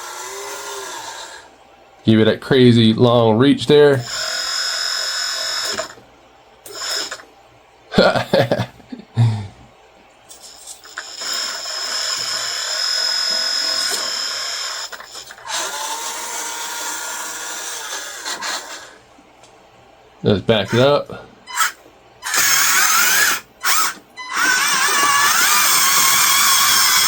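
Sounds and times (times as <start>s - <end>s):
hydraulic pump whine: 0.0s - 1.6s, 3.9s - 7.3s, 10.3s - 19.0s, 20.6s - 27.0s.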